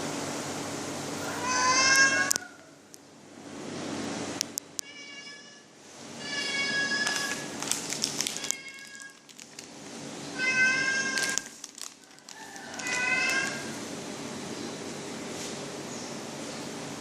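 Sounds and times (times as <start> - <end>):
cat meowing: 1.2 - 2.6, 6.2 - 7.4, 8.3 - 9.3, 10.4 - 11.4, 12.8 - 13.8
brief crackling noises: 7.0 - 9.7, 11.1 - 13.6.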